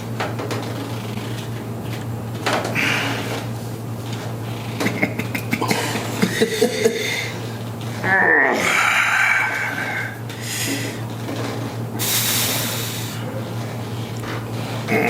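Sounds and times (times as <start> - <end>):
steady low hum: 0.0 - 15.0
treatment table creaking: 0.2 - 5.2.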